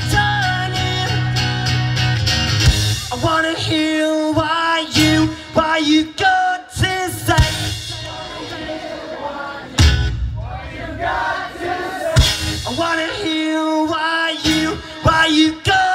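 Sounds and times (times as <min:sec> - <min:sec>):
person singing: 0:00.0 - 0:01.9, 0:03.0 - 0:08.5
rock band playing live: 0:00.0 - 0:08.7, 0:09.7 - 0:10.4, 0:12.0 - 0:15.9
strummed guitar chords: 0:00.0 - 0:08.8, 0:11.3 - 0:15.9.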